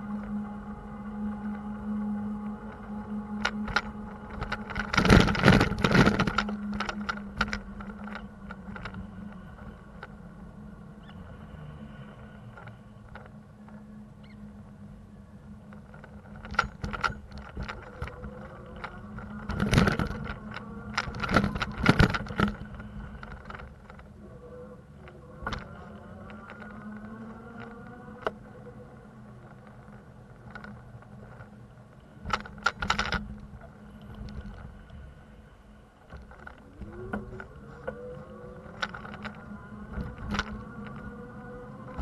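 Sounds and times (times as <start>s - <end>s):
low engine hum: 0.0s - 42.0s
scattered clicks: 1.0s - 10.2s, 15.6s - 24.2s, 25.0s - 35.0s, 36.0s - 42.0s
bicycle rattling and clattering: 3.4s - 9.4s, 15.7s - 24.2s, 25.0s - 34.7s, 36.0s - 42.0s.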